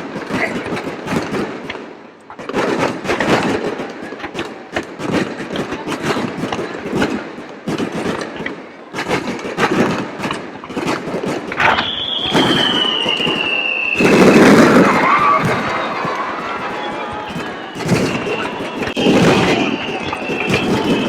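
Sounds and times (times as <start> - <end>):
fireworks crackling and popping: 0.0 - 21.0
whistling firework: 8.9 - 21.0.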